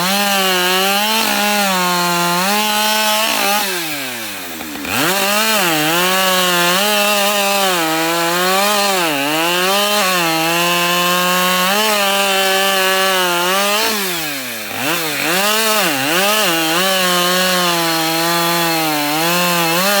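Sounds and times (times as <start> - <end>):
chainsaw cutting wood: 0.0 - 20.0.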